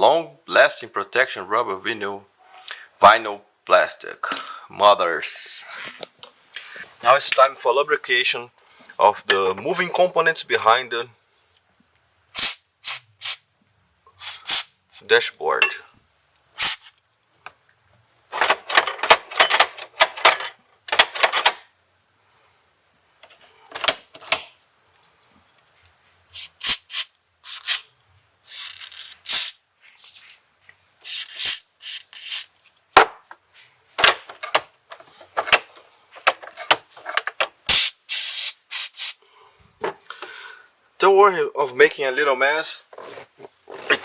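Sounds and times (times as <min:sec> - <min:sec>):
spray lubricant hissing: 0:12.3 - 0:13.4, 0:14.2 - 0:14.7, 0:16.6 - 0:16.9, 0:26.3 - 0:27.8, 0:29.3 - 0:29.6, 0:31.0 - 0:32.5, 0:37.7 - 0:39.2.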